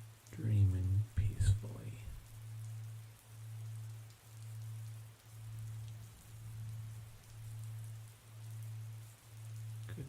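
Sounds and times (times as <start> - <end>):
low pulsing hum: 0.0 - 10.0
steady rain: 0.0 - 10.0.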